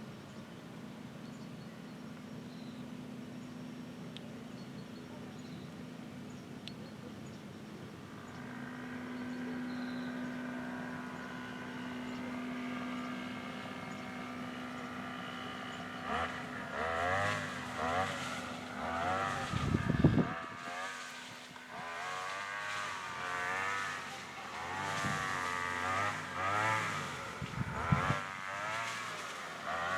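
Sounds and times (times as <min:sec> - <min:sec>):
grass trimmer revving: 0:08.1 - 0:29.9.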